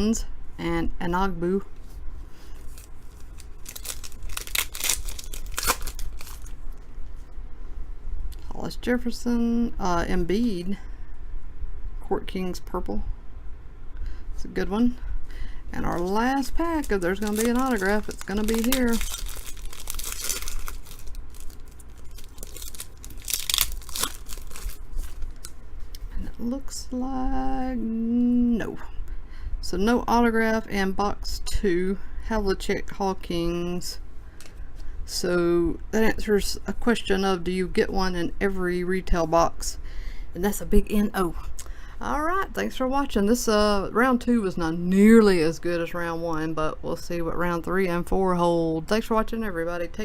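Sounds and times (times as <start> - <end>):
foil wrapper crinkling and tearing: 2.6 - 6.6, 15.9 - 25.6.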